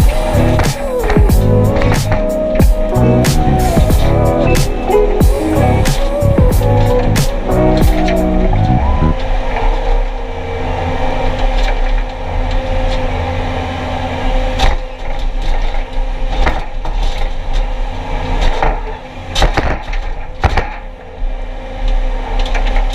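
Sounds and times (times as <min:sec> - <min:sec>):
engine running: 0:00.0 - 0:22.5
sharp cracks and knocks: 0:14.6 - 0:17.3, 0:18.4 - 0:21.0.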